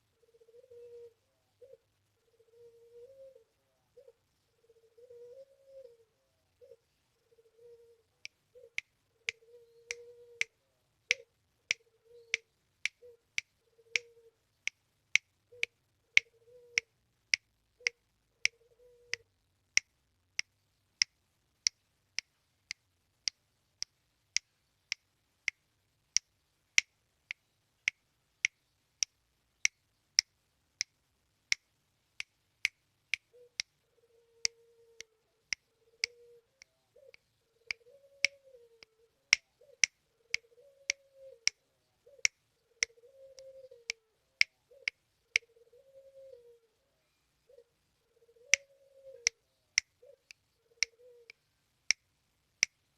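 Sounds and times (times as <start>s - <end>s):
dove cooing low: 0.0s - 12.4s, 13.0s - 14.4s, 15.4s - 16.9s, 17.8s - 19.3s, 33.3s - 49.4s, 50.0s - 51.4s
sharp snapping clicks: 27.9s - 33.7s, 37.1s - 38.4s.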